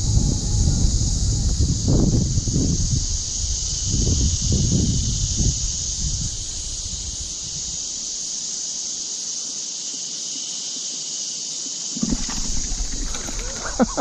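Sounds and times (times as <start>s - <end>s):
low wind rumble: 0.0s - 8.1s, 12.0s - 14.0s
high-pitched insect chorus: 0.0s - 14.0s.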